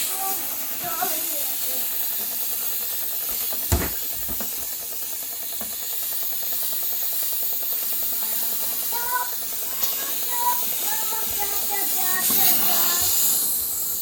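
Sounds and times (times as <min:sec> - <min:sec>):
steam mop hissing: 0:00.0 - 0:14.0
knock: 0:03.7 - 0:04.5.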